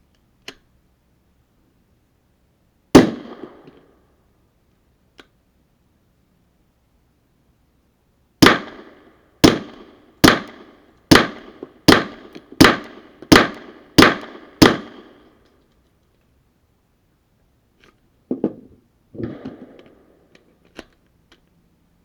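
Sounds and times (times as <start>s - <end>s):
suppressed pistol shots: 3.0s - 3.9s, 8.4s - 15.2s.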